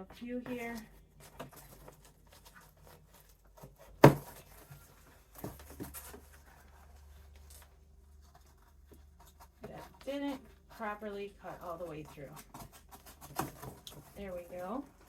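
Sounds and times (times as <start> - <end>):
knife scraping poster board: 8.3 - 14.8.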